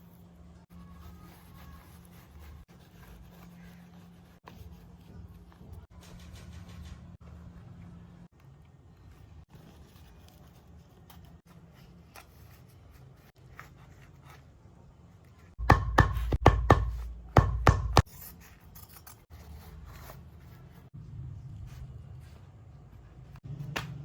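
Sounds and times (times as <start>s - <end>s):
sharp tool strikes: 15.6s - 18.1s.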